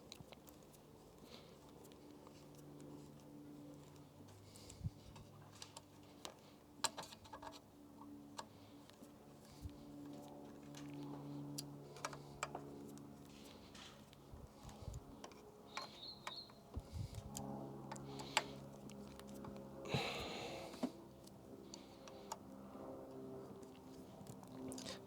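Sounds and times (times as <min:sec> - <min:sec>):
faint steady hum: 0:00.0 - 0:25.0
hand tools clicking and tapping: 0:10.0 - 0:20.1.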